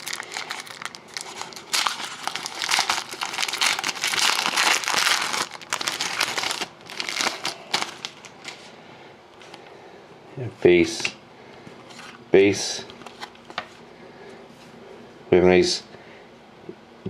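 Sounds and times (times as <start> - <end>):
wrapper tearing and crinkling: 0.0 - 8.6.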